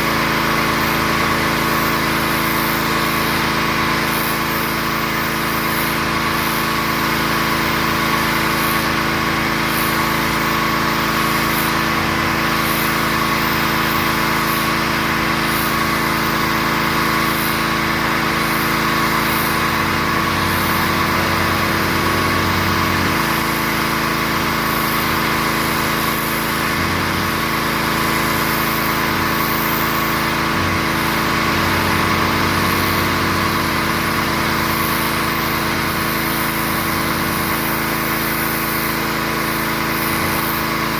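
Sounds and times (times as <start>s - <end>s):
pressure washer engine running: 0.0s - 40.9s.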